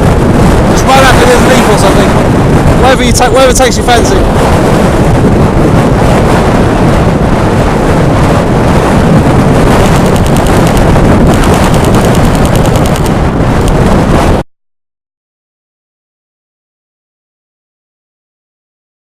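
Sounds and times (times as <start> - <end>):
wind buffeting microphone: 0.0 - 14.4.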